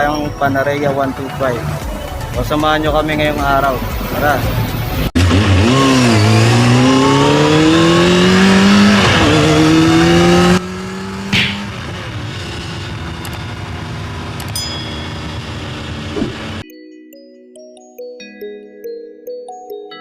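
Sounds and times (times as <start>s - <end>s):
motorcycle engine accelerating: 4.2s - 16.6s.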